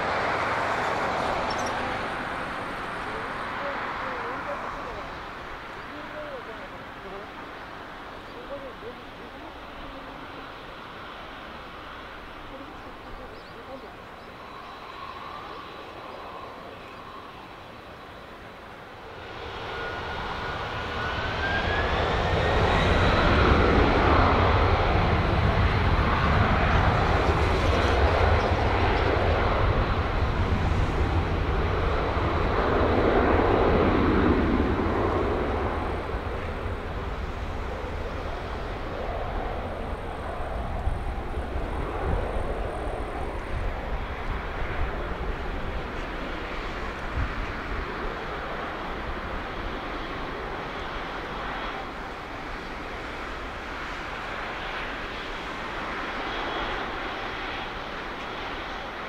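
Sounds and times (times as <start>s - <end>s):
jet engines spooling up: 14.3s - 59.0s.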